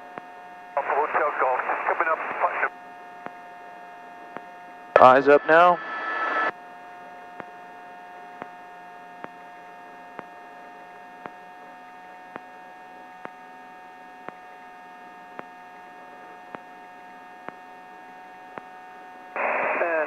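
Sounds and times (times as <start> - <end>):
fixed intercom tones: 0.8 - 2.8, 5.0 - 6.5, 19.4 - 20.0.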